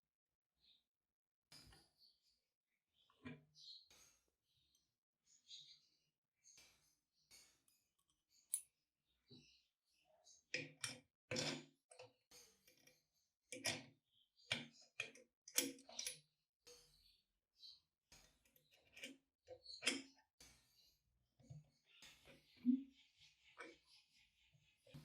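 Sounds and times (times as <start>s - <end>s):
small parts clicking and knocking: 10.5s - 16.9s, 18.1s - 20.7s.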